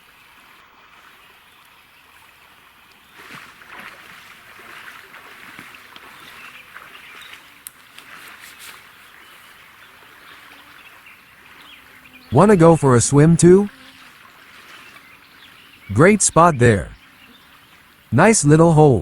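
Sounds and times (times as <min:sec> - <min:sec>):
river water rippling: 0:00.0 - 0:19.0
small splashes and clicks: 0:01.5 - 0:10.7.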